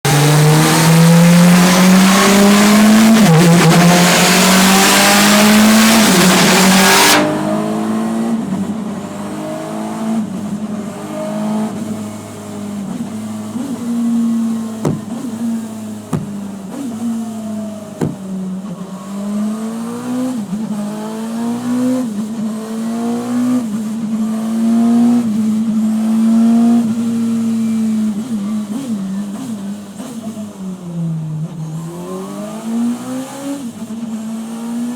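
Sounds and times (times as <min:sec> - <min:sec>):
sharp engine pops: 0:14.9 - 0:15.4, 0:16.1 - 0:16.4, 0:18.0 - 0:18.3.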